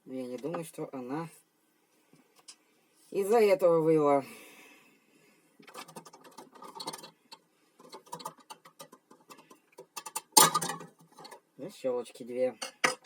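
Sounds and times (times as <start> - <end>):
parts clattering: 5.6 - 7.2, 7.8 - 11.4, 12.6 - 13.0
clicks and scrapes of machine parts: 5.6 - 11.4.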